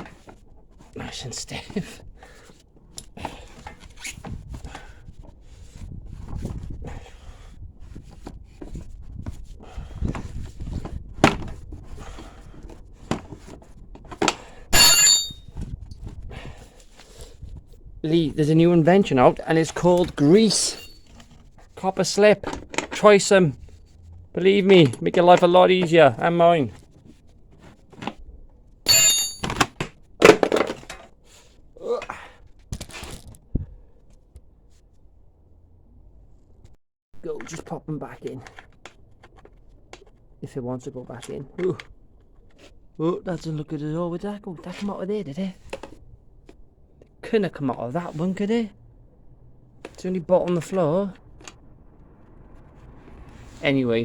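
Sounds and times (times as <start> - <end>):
hand tools knocking and clicking: 14.8 - 15.4, 28.9 - 29.6
ringing metal clang: 14.8 - 15.4, 20.2 - 21.0, 28.9 - 29.6.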